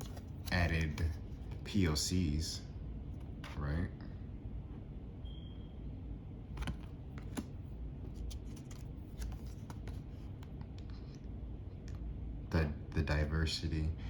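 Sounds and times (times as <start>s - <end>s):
cards being handled and flipped: 0.0s - 1.6s, 6.6s - 11.1s.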